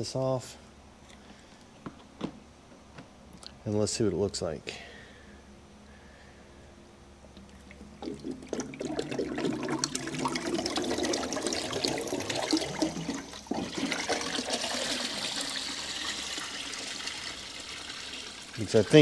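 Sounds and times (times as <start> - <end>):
water pouring and splashing: 7.6 - 19.0.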